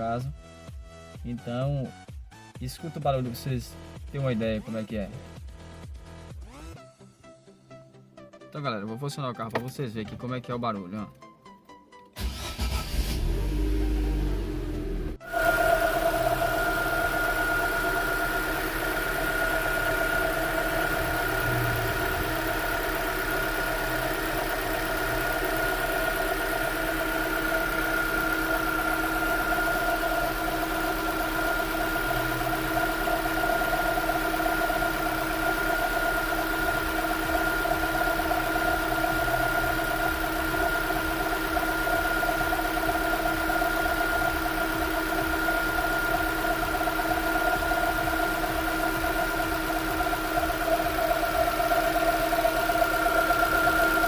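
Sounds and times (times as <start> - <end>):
car engine idling: 12.2 - 54.0
whining drone: 13.4 - 54.0.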